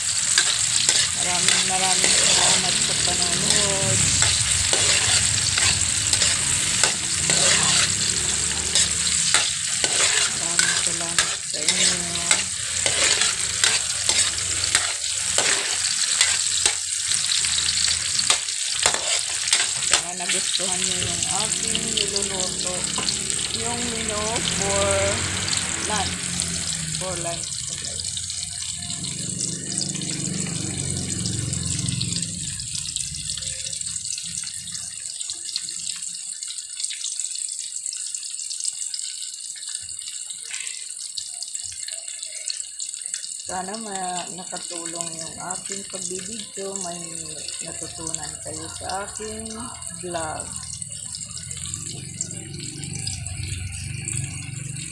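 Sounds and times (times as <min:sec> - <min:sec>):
rush of water: 0:00.0 - 0:15.5, 0:17.1 - 0:35.5
food sizzling in oil: 0:00.0 - 0:54.9
watery hiss with crackling: 0:00.0 - 0:54.9
utensil clicking on pan: 0:00.2 - 0:21.5.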